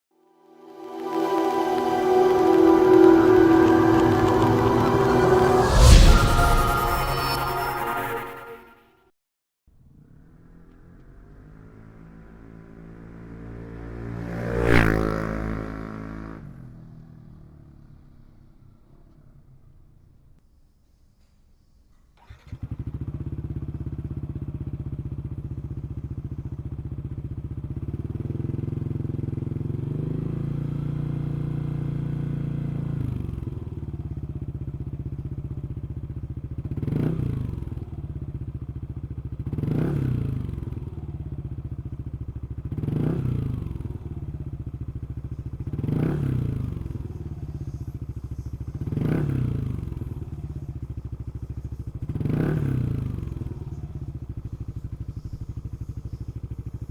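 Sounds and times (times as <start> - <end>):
scooter engine starting and idling: 22.2 - 29.8.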